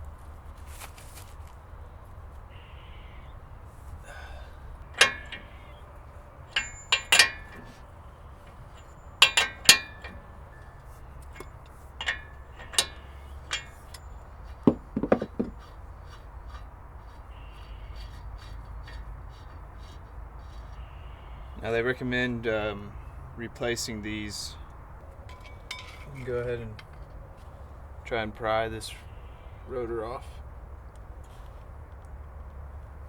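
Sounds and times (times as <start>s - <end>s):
metallic clinks of tools: 4.1s - 15.7s, 25.3s - 27.0s
dull knocks: 14.6s - 15.7s.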